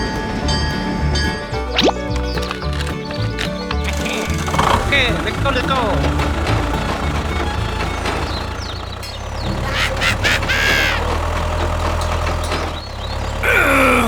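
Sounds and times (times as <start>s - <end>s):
small motor humming: 1.6s - 13.5s
falling cry-like call: 9.6s - 11.1s.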